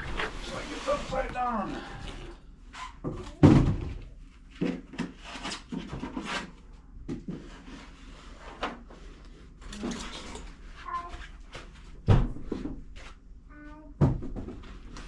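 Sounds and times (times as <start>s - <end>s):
rubbing: 0.0s - 2.9s
objects knocking and thudding: 3.0s - 6.4s, 12.0s - 12.9s, 14.0s - 14.9s.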